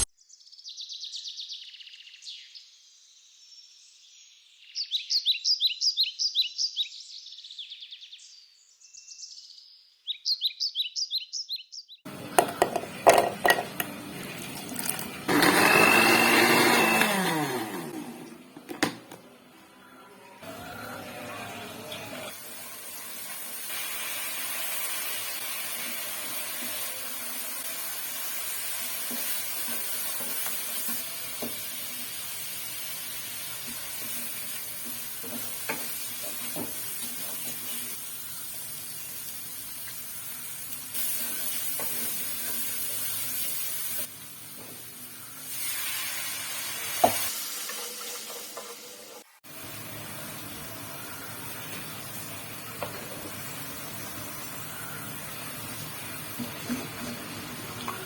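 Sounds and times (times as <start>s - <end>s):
food sizzling in hot oil: 20.7s - 58.0s.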